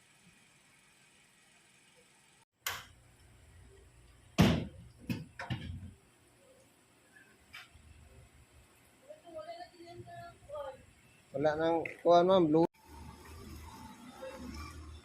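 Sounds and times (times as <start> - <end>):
knocks and thuds: 4.4 - 6.0.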